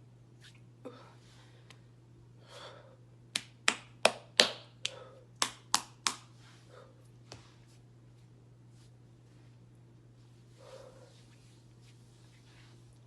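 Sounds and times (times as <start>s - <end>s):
sharp hand slaps: 3.3s - 6.3s.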